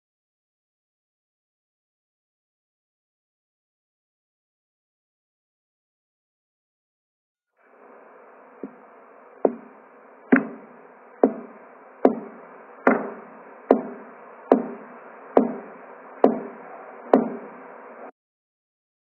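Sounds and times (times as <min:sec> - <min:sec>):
constant hiss: 0:07.6 - 0:18.1
heartbeat: 0:08.6 - 0:17.6.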